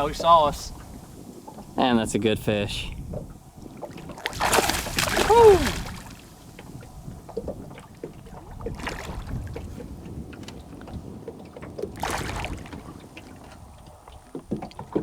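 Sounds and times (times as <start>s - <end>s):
water noise from boat: 0.0s - 15.0s
wind: 0.0s - 15.0s
splashy rushes of water: 3.8s - 6.6s, 12.0s - 13.0s.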